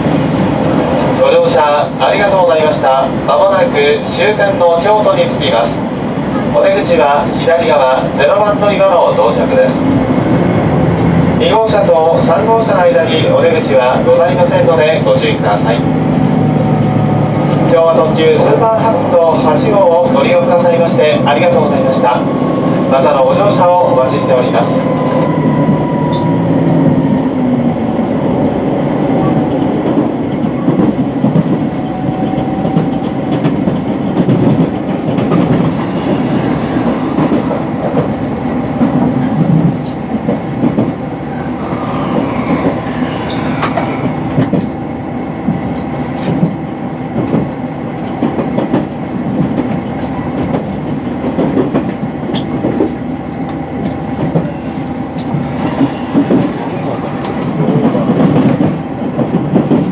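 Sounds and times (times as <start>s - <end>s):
train running rumble: 0.0s - 59.9s.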